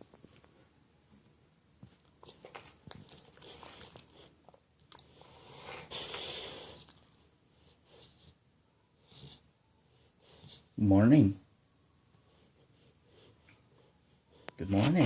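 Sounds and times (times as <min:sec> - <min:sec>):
puppy snoring: 0:09.0 - 0:10.9.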